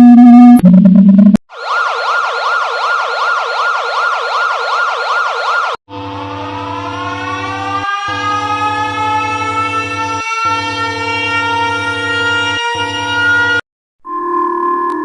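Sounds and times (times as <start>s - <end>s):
electronic siren wailing: 0.0s - 15.0s
buzzy alarm tone: 5.9s - 14.9s.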